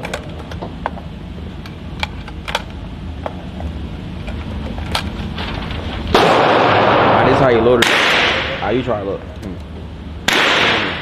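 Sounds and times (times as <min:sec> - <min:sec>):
sharp clicks and knocks: 0:00.0 - 0:05.7
steady low hum: 0:00.0 - 0:11.0.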